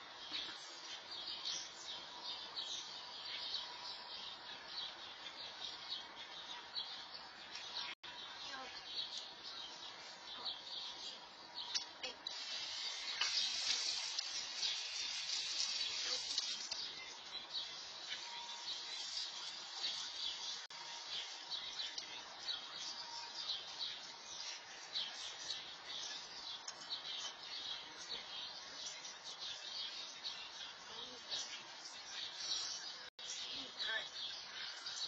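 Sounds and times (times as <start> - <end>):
insects and birds chirping: 0.0 - 35.0.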